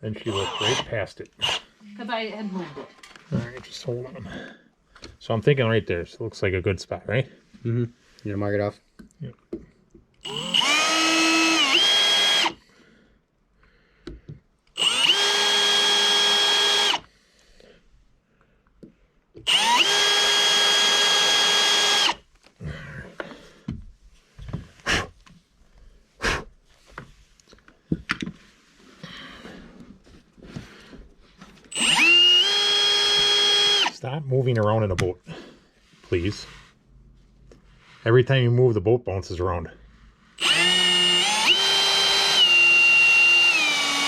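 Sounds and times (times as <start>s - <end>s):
power drill boring: 0.3s - 1.7s, 10.2s - 12.6s, 14.8s - 17.1s, 19.4s - 22.2s, 31.7s - 34.0s, 40.4s - 44.0s.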